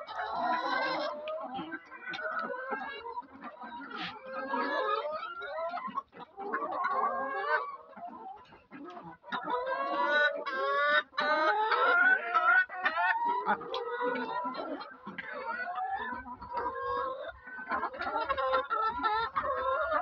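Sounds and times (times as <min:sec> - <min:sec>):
hens clucking and calling: 0:00.0 - 0:20.0.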